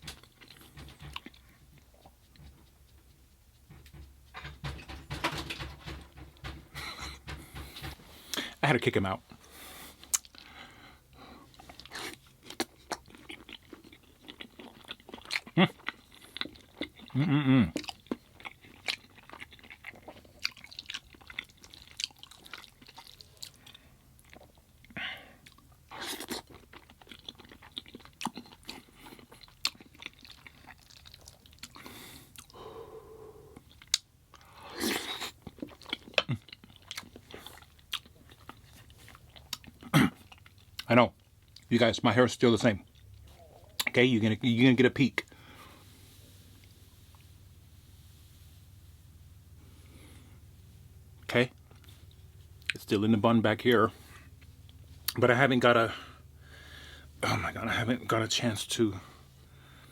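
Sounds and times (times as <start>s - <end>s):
chewing and crunching food: 0.0s - 48.6s, 49.2s - 59.9s
person humming: 17.2s - 17.7s.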